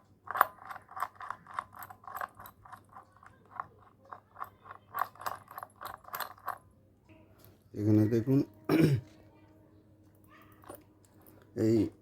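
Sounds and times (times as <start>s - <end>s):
small metal parts clicking: 0.0s - 6.7s.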